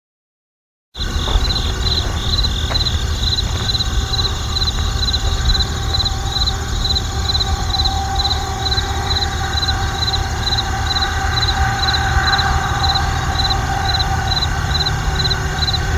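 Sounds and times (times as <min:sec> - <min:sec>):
distant traffic rumble: 0:01.0 - 0:07.7
crickets chirping: 0:01.0 - 0:15.9.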